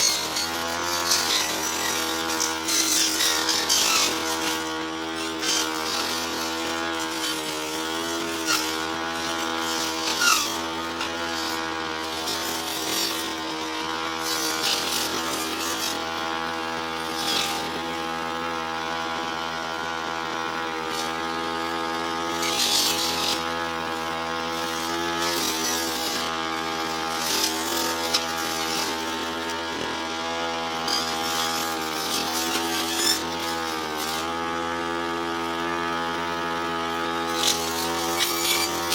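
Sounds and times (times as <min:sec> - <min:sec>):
blade swishing through grass: 0:00.0 - 0:13.5, 0:37.1 - 0:38.9
brush cutter engine running: 0:00.0 - 0:38.9.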